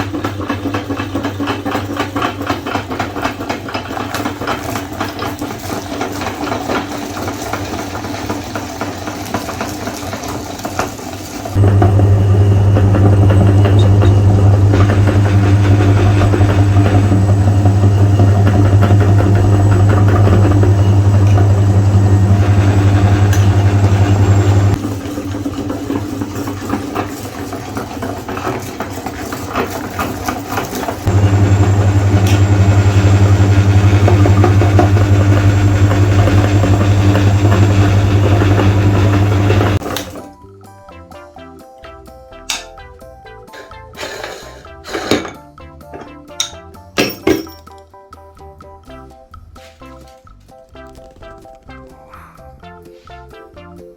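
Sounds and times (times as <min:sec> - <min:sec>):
electric meat grinder humming: 0:00.0 - 0:40.2.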